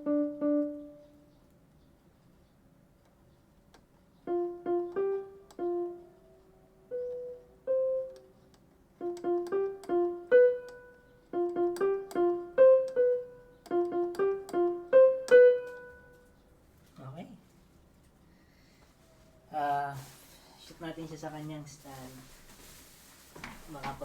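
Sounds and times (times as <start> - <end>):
keyboard single-note melody: 0.0 - 1.4, 4.2 - 8.3, 9.0 - 16.3.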